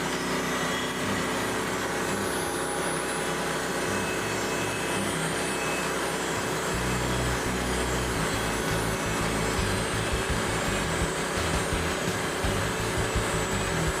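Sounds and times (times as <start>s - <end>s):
sawmill engine running: 0.0s - 14.0s
deep low hum: 6.8s - 14.0s.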